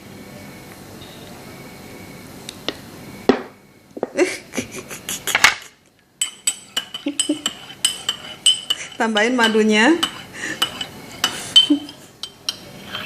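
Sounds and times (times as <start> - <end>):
spoon scraping in a glass: 6.2 - 13.0
spoon stirring with ringing clinks: 6.2 - 13.0.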